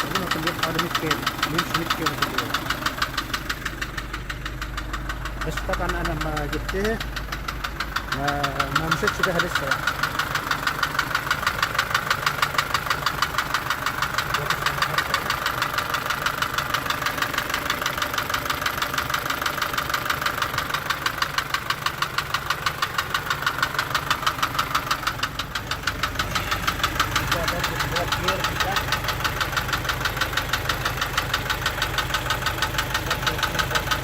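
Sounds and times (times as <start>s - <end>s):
rapid knocking tick: 0.0s - 34.0s
truck engine idling: 0.0s - 34.0s.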